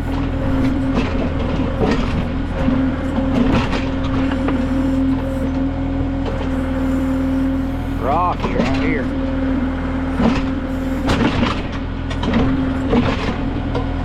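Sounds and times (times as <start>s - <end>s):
steady whine: 0.0s - 13.7s
diesel tractor engine running: 0.0s - 14.0s
backhoe clattering on rocks: 0.2s - 4.6s.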